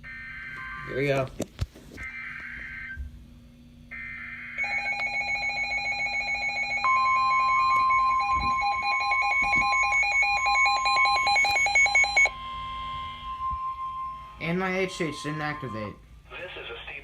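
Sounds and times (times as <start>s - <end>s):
steady warning tone: 2.0s - 16.3s
rapid electronic alarm beeping: 4.0s - 16.0s.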